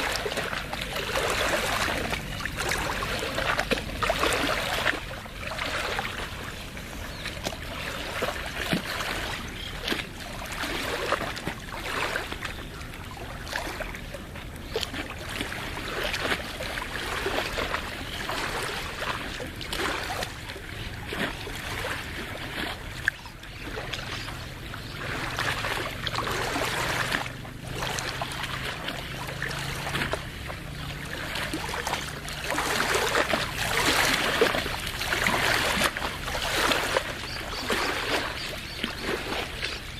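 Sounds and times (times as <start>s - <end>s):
small waves lapping: 0.0s - 39.9s.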